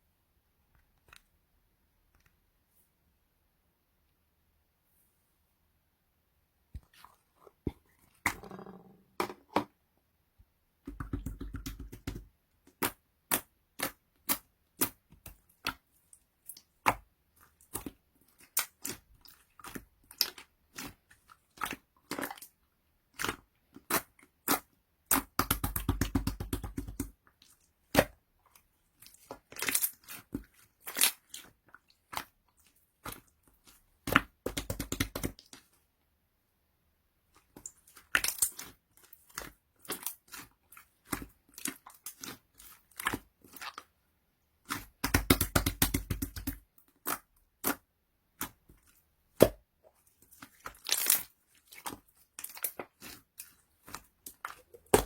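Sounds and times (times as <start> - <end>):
slime squishing with wet clicks: 10.8 - 36.0, 37.2 - 55.0.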